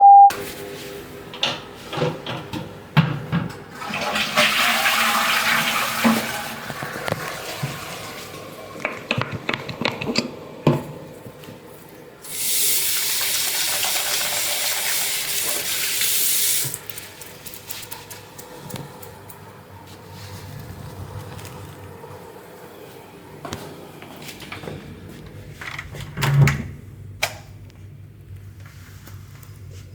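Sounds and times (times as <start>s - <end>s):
toilet flushing: 0.8s - 11.2s, 12.2s - 18.3s.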